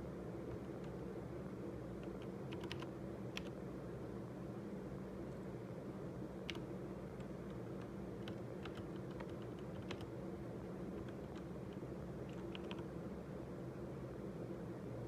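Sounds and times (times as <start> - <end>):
steady low hum: 0.0 - 15.0
keyboard keys clicking: 2.0 - 3.5, 6.4 - 10.1, 11.0 - 12.9.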